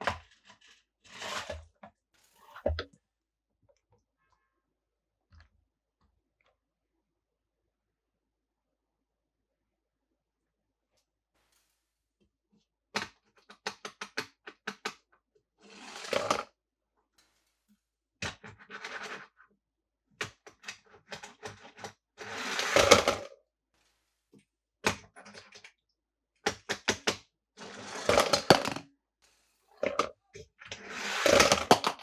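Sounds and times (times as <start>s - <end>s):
toy cars clicking and tapping: 20.2s - 23.3s, 27.8s - 28.9s, 29.8s - 32.0s.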